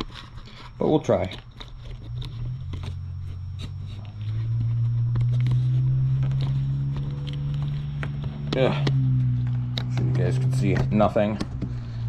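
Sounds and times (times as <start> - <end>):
low machine hum: 0.0 - 12.0.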